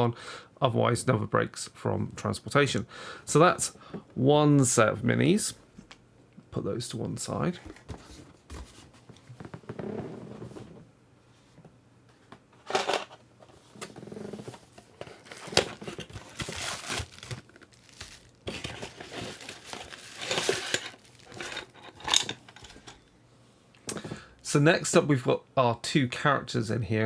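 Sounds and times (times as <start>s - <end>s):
packaging crinkling: 14.6s - 23.0s.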